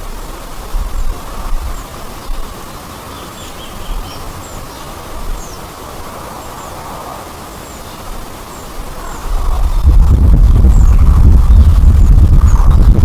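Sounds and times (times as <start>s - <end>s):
small birds chirping: 0.0s - 13.0s
steady rushing noise: 0.0s - 13.0s
wind gusts on microphone: 3.8s - 13.0s.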